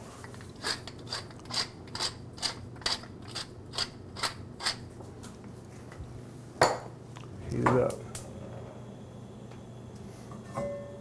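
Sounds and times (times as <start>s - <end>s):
pepper mill grinding: 0.3s - 4.8s.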